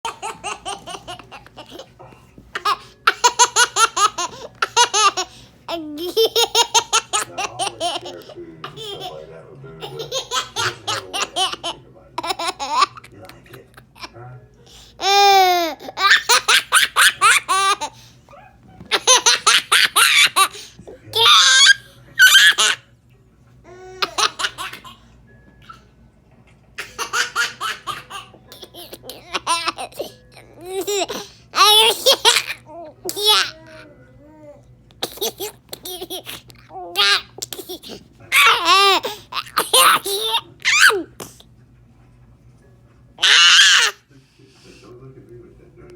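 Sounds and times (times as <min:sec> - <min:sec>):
baby laughing hysterically: 0:00.0 - 0:01.9, 0:02.6 - 0:13.1, 0:15.0 - 0:18.0, 0:18.9 - 0:22.8, 0:24.0 - 0:25.0, 0:26.8 - 0:33.7, 0:35.0 - 0:41.0, 0:43.2 - 0:44.0.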